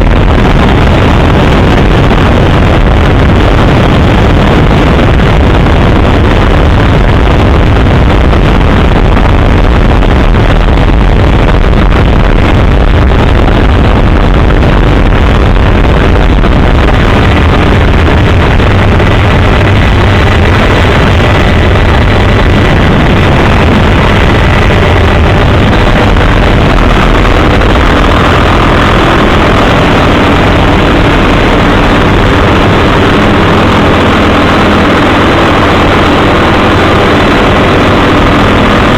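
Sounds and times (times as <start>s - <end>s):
helicopter engine and rotor: 16.6s - 38.9s.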